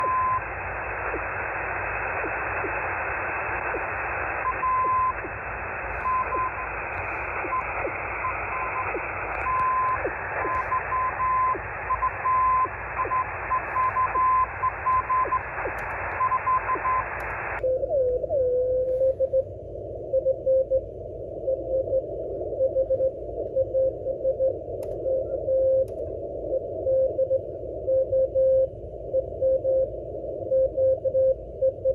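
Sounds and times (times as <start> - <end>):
morse code beep tone: 0.0 - 1.2, 3.6 - 5.3, 5.9 - 17.8
radio band noise hiss: 0.0 - 17.6
faint interference ticks: 0.0 - 18.2, 24.7 - 26.1.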